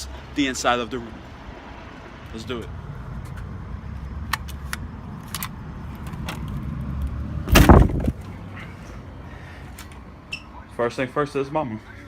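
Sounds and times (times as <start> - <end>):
loud thump: 7.5 - 8.2.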